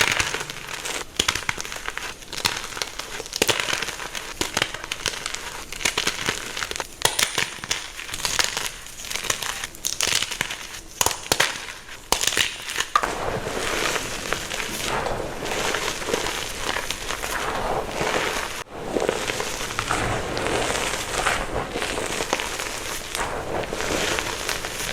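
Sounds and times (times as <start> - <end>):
chalk crunching and crackling: 0.0 - 24.9.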